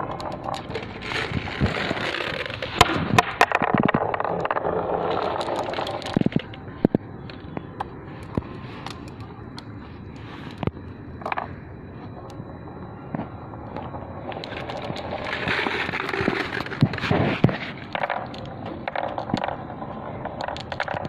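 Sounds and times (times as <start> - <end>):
marbles rolling on a track: 0.0 - 7.6, 13.4 - 21.0
marbles clicking: 0.0 - 9.7, 13.5 - 21.0.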